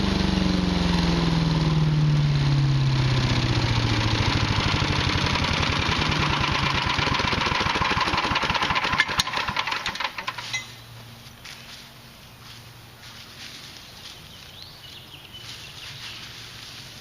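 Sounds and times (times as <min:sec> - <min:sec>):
small gas engine running: 0:00.0 - 0:10.9
engine misfiring clicks: 0:05.9 - 0:10.8.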